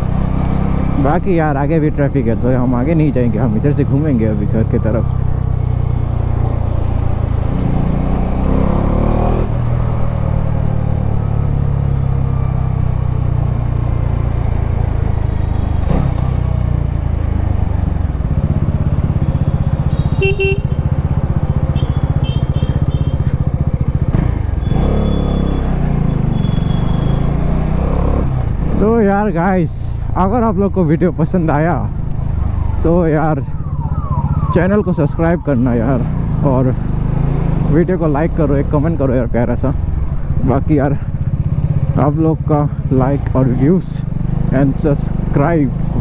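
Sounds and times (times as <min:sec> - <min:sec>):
motorcycle engine running: 0:00.0 - 0:34.9, 0:35.6 - 0:46.0
vehicle horns honking: 0:19.4 - 0:21.0, 0:21.7 - 0:23.4, 0:24.6 - 0:27.4.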